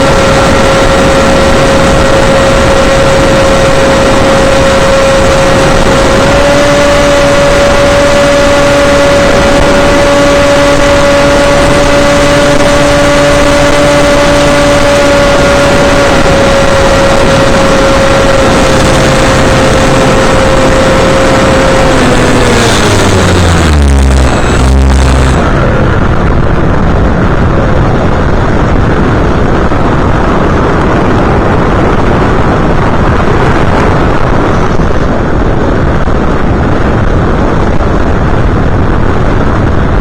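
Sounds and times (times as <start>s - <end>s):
motor and propeller whine: 0.0s - 35.7s
loud wind rush: 0.0s - 40.0s.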